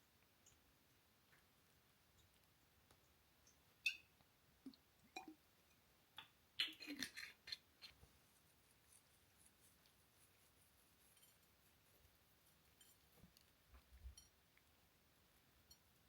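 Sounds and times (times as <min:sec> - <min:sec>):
small objects clicking and tapping: 0:02.1 - 0:08.0.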